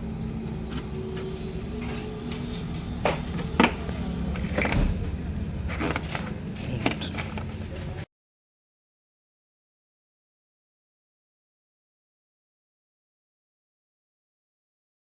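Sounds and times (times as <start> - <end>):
car engine idling: 0.0 - 8.0.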